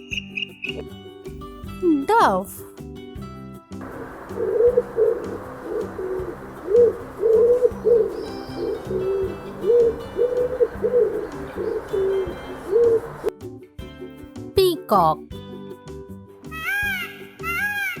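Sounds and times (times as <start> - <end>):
steady background hiss: 3.8 - 13.3
dove cooing: 3.9 - 13.3.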